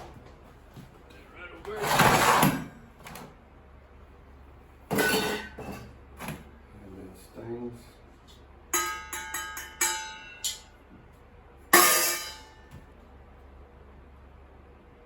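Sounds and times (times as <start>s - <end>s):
metal objects clanking and ringing: 4.9s - 5.9s, 8.8s - 10.7s, 11.8s - 12.7s.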